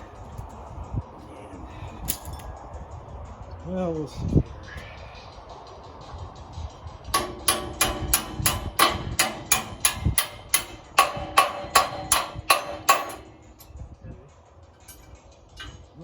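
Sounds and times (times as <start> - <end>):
hammer striking metal: 7.1 - 13.7.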